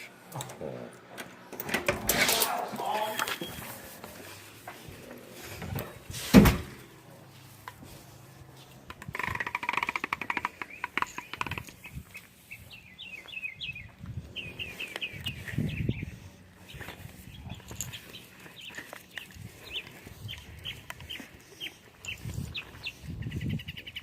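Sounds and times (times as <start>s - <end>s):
bird chirps: 10.2s - 24.0s.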